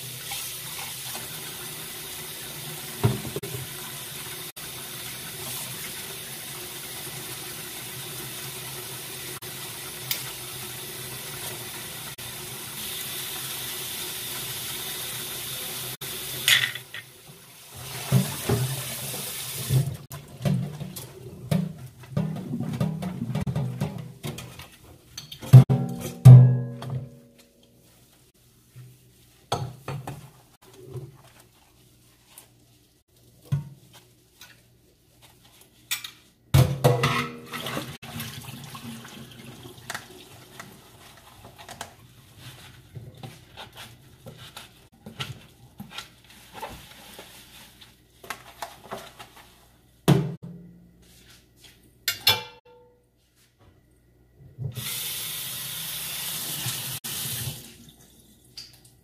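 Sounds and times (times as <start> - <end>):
dishes clattering: 16.4 - 17.1, 36.6 - 38.0.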